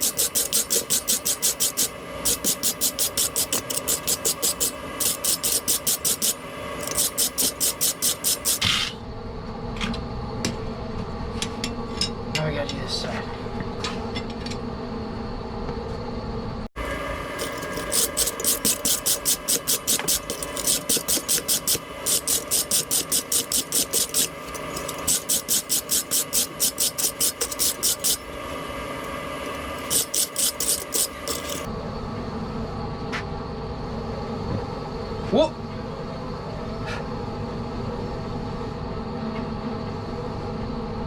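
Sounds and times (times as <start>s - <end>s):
wire brush scrubbing steel: 0.0s - 8.7s, 16.8s - 31.7s
steady hum: 0.0s - 9.5s, 16.7s - 32.8s.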